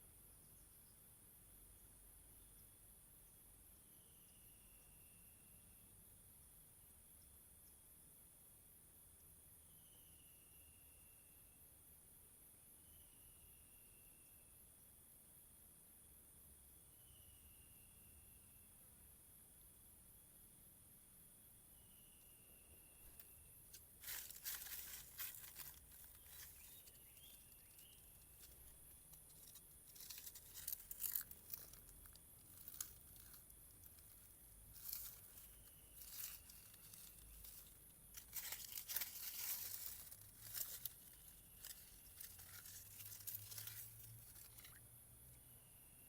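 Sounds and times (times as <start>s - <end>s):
faint insect chirps: 0.0s - 46.0s
rustling and crinkling: 23.0s - 44.9s.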